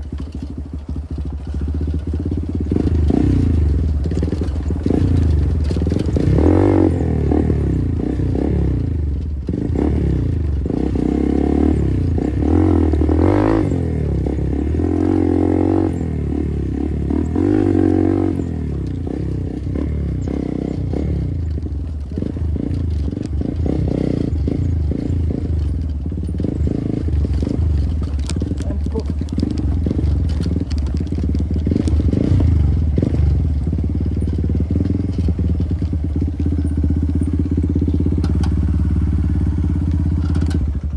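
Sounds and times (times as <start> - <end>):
motorcycle engine revving: 0.0 - 40.9
clicks and rattles: 18.3 - 38.7, 39.7 - 40.9.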